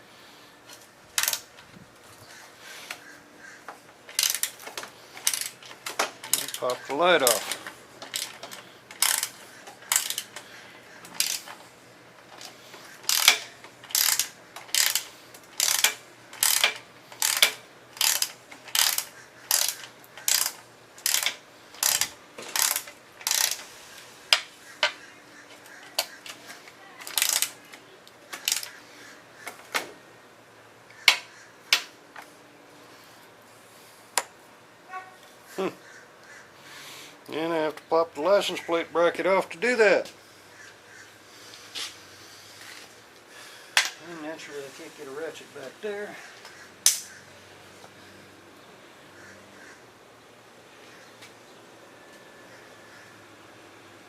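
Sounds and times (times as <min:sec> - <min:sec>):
socket ratchet clicking: 0:01.2 - 0:01.4, 0:04.1 - 0:06.6, 0:07.2 - 0:10.4, 0:11.1 - 0:11.6, 0:12.4 - 0:23.7, 0:27.0 - 0:27.6.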